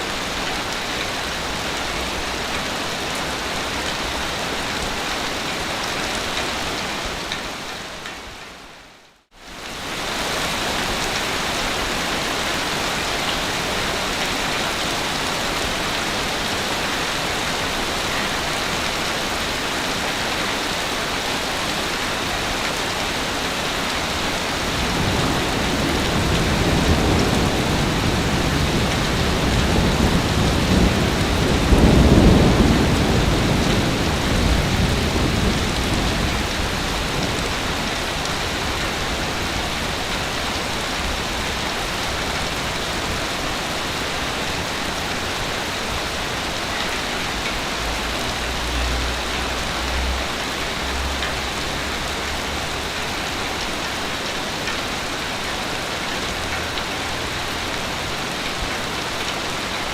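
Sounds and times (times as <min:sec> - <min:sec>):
ocean surf on a beach: 0:21.0 - 0:59.9.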